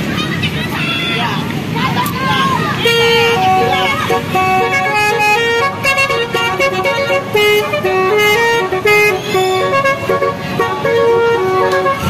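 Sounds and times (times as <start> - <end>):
musical air horns playing a tune: 2.8 - 12.0.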